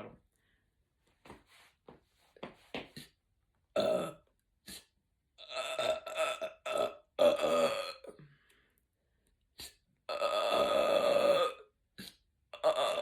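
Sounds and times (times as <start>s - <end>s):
woman burping: 3.8s - 4.3s, 5.4s - 8.2s, 10.1s - 11.7s, 12.6s - 13.0s.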